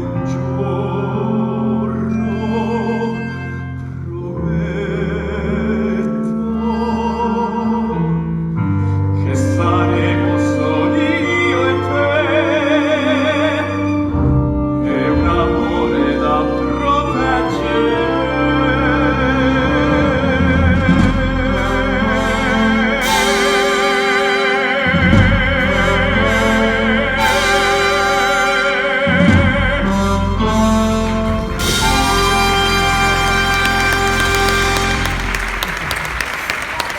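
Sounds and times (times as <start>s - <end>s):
theatre orchestra with strings: 0.0s - 36.9s
person singing with vibrato: 14.8s - 36.0s.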